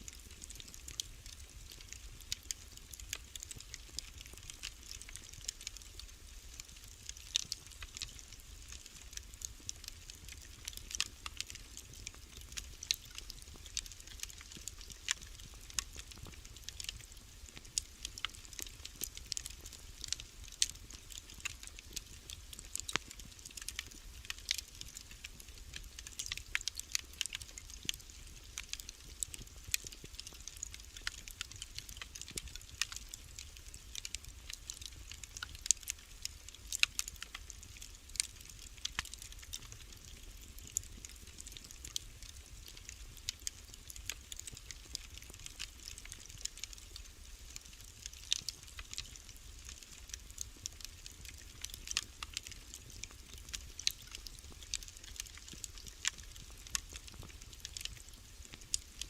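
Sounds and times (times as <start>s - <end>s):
fire popping and snapping: 0.0s - 59.0s
wood fire crackling: 0.0s - 59.0s.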